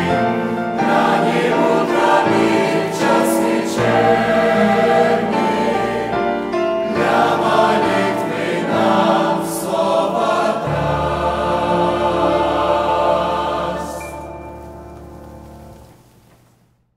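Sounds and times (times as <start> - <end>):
church choir singing a hymn: 0.0 - 15.1.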